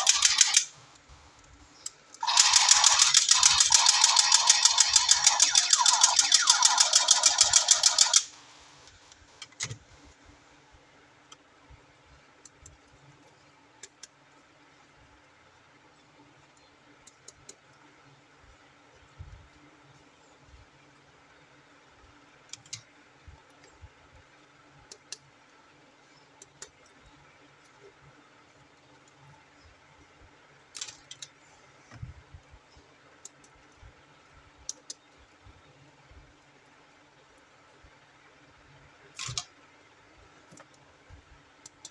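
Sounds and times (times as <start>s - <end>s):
electric toy gun rattling: 0.0s - 0.8s, 2.2s - 8.4s.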